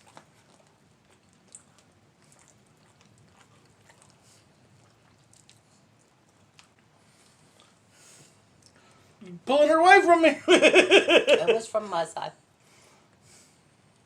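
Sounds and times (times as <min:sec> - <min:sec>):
faint chewing of meat: 0:00.0 - 0:09.2.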